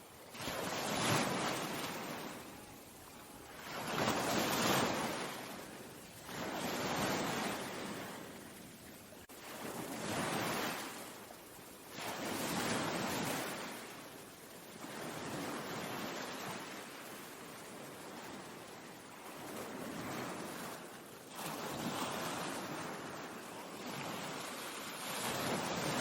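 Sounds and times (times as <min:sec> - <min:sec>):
ocean waves surging: 0:00.2 - 0:08.5, 0:19.4 - 0:26.0.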